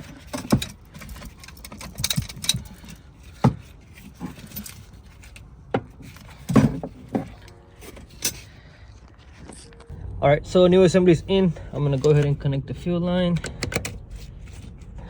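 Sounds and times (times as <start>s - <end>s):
clicks and knocks of handled parts: 0.0s - 8.6s, 13.4s - 14.9s.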